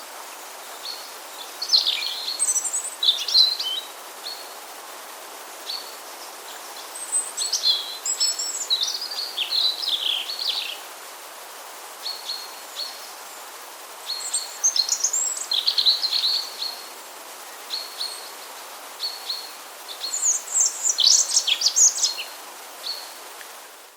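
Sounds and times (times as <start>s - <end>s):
background hiss: 0.0s - 23.9s
robin singing: 0.8s - 4.4s, 6.8s - 10.8s, 19.0s - 23.1s.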